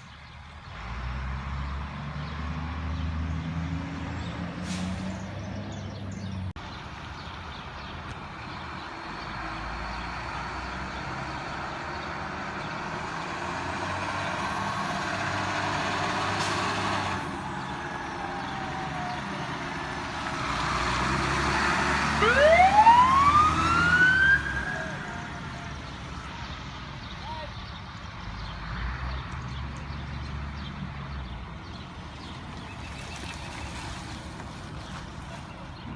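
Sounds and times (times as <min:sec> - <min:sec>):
diesel engine running: 0:04.2 - 0:28.5.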